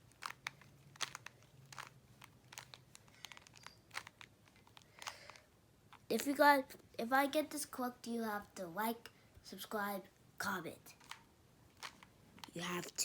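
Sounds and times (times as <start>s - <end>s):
puzzle cube clicks and rattles: 0.0s - 6.1s, 10.9s - 13.0s.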